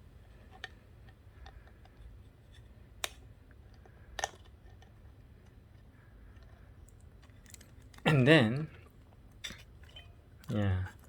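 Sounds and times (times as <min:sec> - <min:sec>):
low steady hum: 0:00.0 - 0:11.0
plastic parts clicking and tapping: 0:00.5 - 0:08.0.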